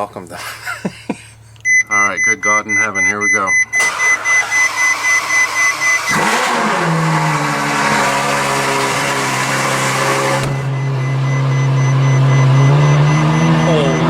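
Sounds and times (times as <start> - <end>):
repeated beeping: 1.6 - 6.5, 10.4 - 14.0
car engine starting and idling: 1.6 - 14.0.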